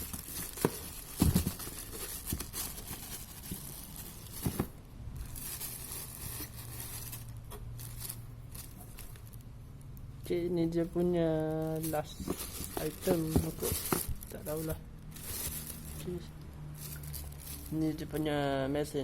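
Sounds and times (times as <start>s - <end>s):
packaging rustling and crinkling: 0.0s - 9.6s, 11.2s - 18.4s
knocks on cardboard box: 0.6s - 1.6s.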